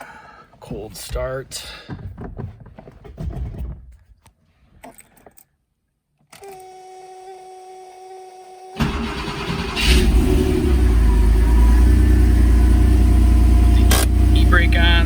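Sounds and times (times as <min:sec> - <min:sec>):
handling and rustling: 0:00.4 - 0:05.6
car engine starting: 0:08.8 - 0:15.0
electric hum: 0:10.1 - 0:15.0
starter cranking: 0:13.8 - 0:15.0.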